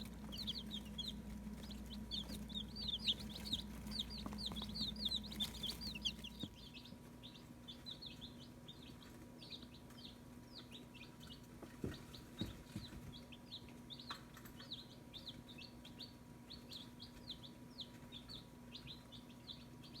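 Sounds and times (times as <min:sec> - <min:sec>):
chicks peeping: 0:00.0 - 0:20.0
faint steady hum: 0:00.0 - 0:20.0.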